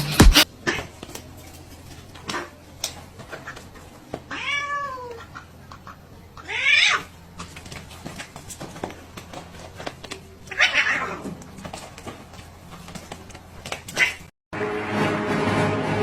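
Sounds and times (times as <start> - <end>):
cat meowing: 4.3 - 5.3, 6.4 - 7.1.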